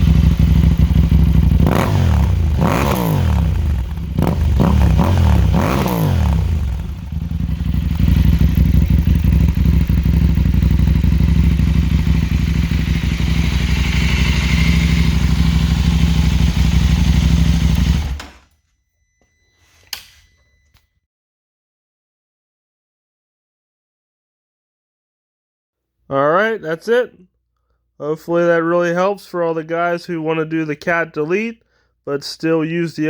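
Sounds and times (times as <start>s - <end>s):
motorcycle engine idling: 0.0s - 18.3s.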